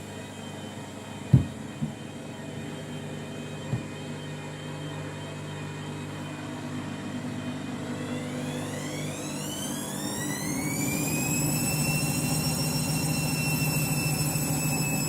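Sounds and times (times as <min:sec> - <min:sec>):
washing machine spinning: 0:00.0 - 0:15.0
washing machine thuds: 0:01.3 - 0:02.0.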